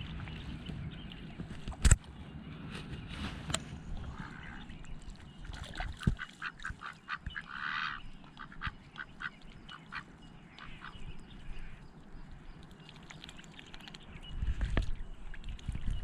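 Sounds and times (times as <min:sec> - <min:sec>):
riverbank background noise: 0:00.0 - 0:16.0
duck quacking: 0:05.8 - 0:11.0.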